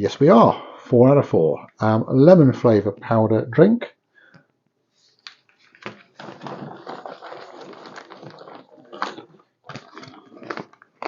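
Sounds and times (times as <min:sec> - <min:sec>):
plastic packaging crinkling: 0:05.2 - 0:11.0.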